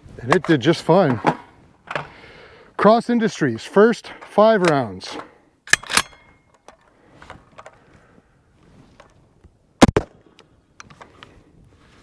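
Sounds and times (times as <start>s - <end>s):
rifle action closing clack: 4.6s - 6.4s
rifle magazine loading clicks: 5.7s - 6.8s.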